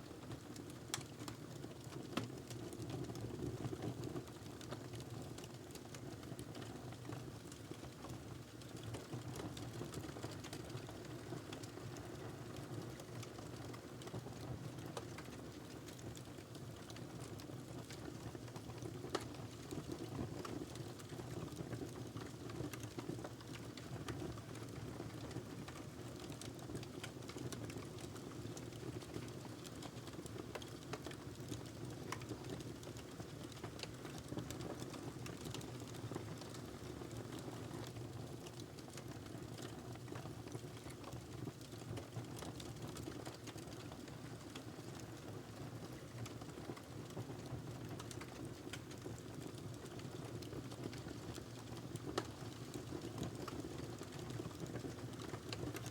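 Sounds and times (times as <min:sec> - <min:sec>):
fire pops and clicks: 0:52.2 - 0:52.8.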